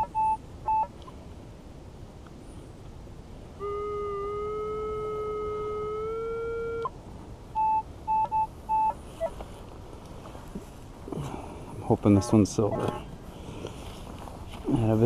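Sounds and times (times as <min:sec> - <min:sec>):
metal detector target tone: 0:00.0 - 0:00.9, 0:12.1 - 0:13.0
short high beeps: 0:00.0 - 0:00.9, 0:07.6 - 0:09.3, 0:12.2 - 0:13.0.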